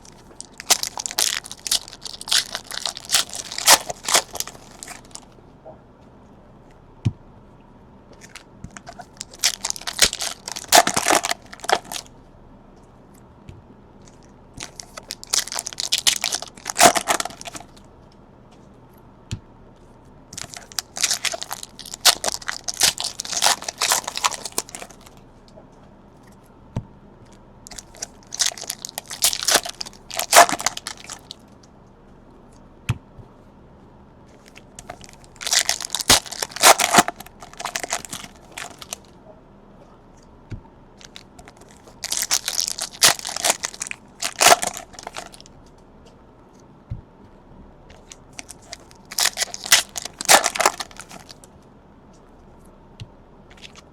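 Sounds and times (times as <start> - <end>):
card pack wrappers tearing and crinkling: 0.0 - 5.2, 8.2 - 12.1, 14.6 - 17.8, 20.4 - 25.2, 27.7 - 31.4, 34.4 - 39.1, 41.0 - 45.5, 47.9 - 51.4.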